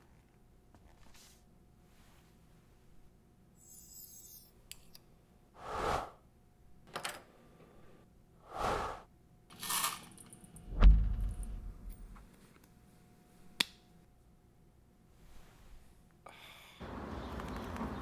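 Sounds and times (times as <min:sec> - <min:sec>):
heavy low thump: 0:10.7 - 0:12.3.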